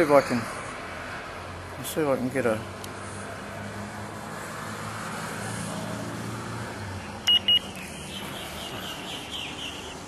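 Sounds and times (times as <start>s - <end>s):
short high electronic beeps: 7.3s - 7.7s.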